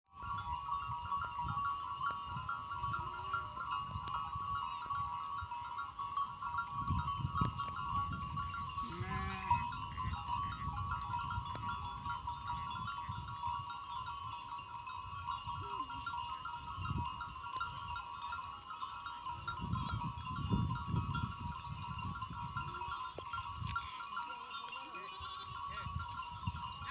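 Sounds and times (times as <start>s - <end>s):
goat bells ringing: 0.1s - 26.9s
goats bleating: 8.8s - 9.6s.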